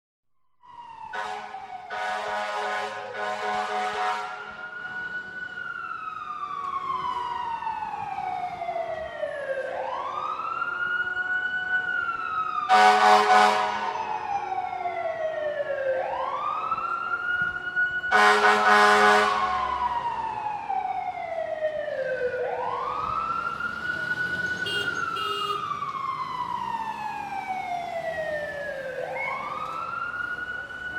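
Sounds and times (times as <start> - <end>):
fire truck siren wailing: 0.6 - 30.9
truck horn blasts: 1.1 - 4.6, 12.7 - 13.9, 18.1 - 19.6, 24.6 - 25.6.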